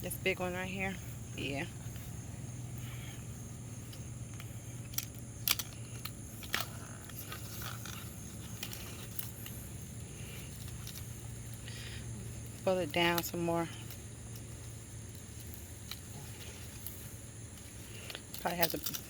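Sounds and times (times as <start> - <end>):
insects trilling: 0.0 - 19.0
low hum: 0.0 - 19.0.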